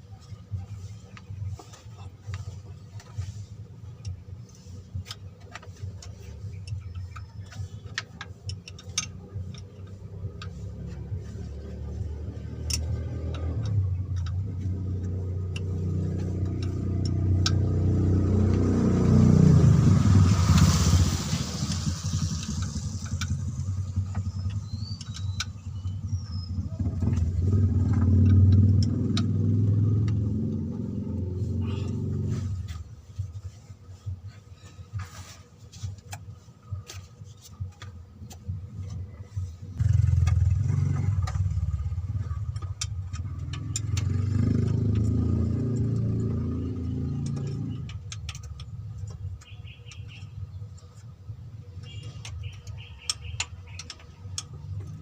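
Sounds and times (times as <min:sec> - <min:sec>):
vehicle engine running: 0:00.0 - 0:55.0
light clicks and taps: 0:03.9 - 0:18.7, 0:35.8 - 0:55.0.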